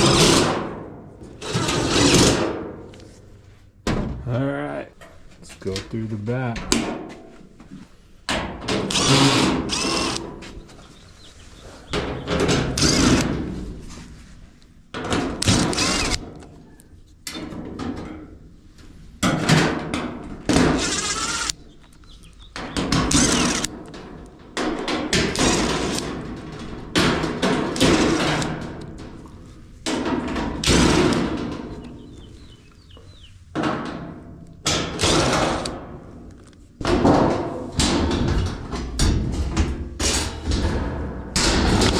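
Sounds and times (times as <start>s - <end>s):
sheet metal thunks and rattles: 0.0s - 2.9s, 3.8s - 4.4s, 6.5s - 7.3s, 8.3s - 10.4s, 11.9s - 13.9s, 14.9s - 16.4s, 17.3s - 18.6s, 19.2s - 21.0s, 22.6s - 32.2s, 33.5s - 36.2s, 36.8s - 41.9s
power screwdriver running: 8.9s - 10.2s, 15.4s - 16.2s, 20.6s - 21.6s, 23.1s - 23.7s.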